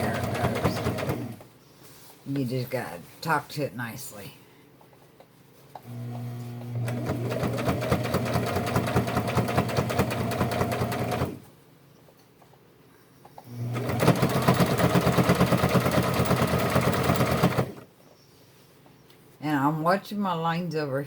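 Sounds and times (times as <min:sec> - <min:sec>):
sewing machine stitching: 0:00.0 - 0:01.4, 0:05.8 - 0:11.5, 0:13.5 - 0:17.9.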